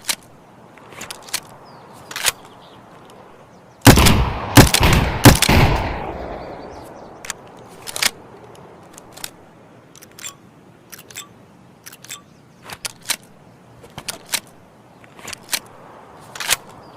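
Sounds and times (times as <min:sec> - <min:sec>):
grenade launcher shot: 0:03.9 - 0:06.3
sharp mechanical clicks: 0:07.2 - 0:14.6.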